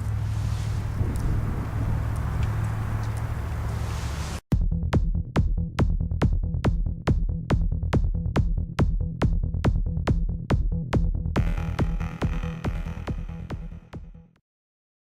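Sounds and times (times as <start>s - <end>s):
electronic dance music: 11.4s - 14.1s.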